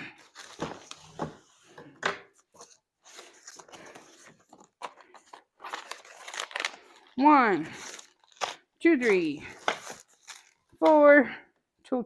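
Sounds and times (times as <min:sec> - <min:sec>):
packaging crinkling: 0:02.6 - 0:08.7, 0:09.5 - 0:10.8.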